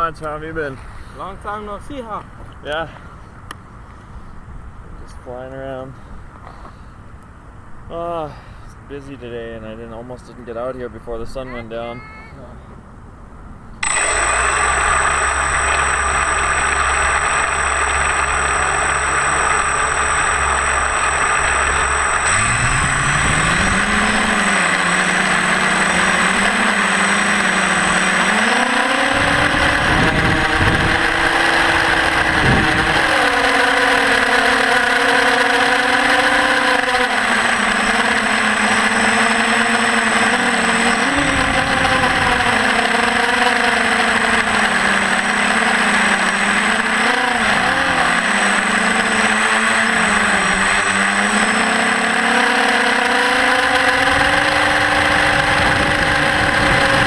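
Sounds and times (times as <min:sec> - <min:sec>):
wind gusts: 0:13.4 - 0:35.4
drone motors whining: 0:13.8 - 0:57.0.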